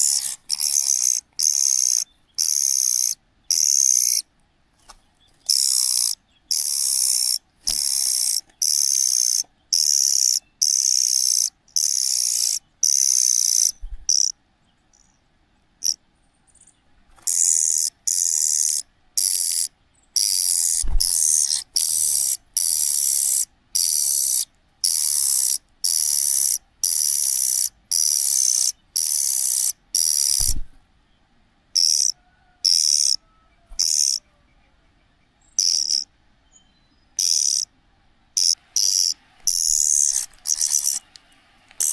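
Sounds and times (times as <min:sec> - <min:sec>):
chick hissing begging call: 0:00.0 - 0:04.2.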